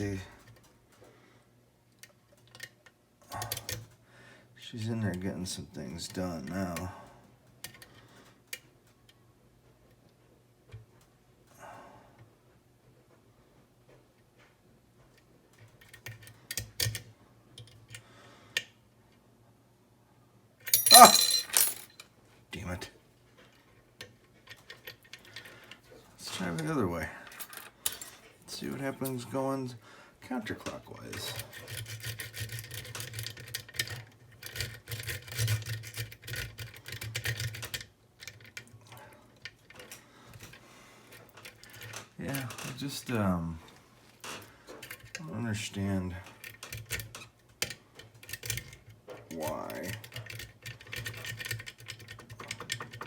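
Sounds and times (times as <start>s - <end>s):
lock pick scraping and clicking: 31.3s - 38.6s.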